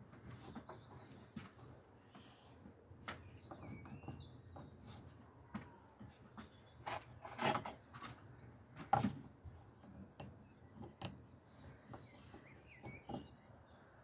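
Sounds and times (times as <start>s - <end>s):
bird chirping faintly: 10.3s - 14.0s.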